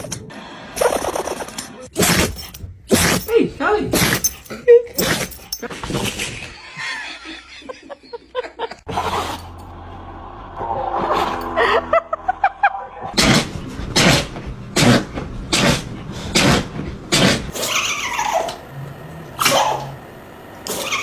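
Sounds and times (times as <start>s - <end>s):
dog sneezing: 13.2s - 18.6s, 19.4s - 20.0s, 20.7s - 21.0s
dog crying: 17.5s - 20.1s, 20.7s - 21.0s
dog whimpering: 17.5s - 20.1s.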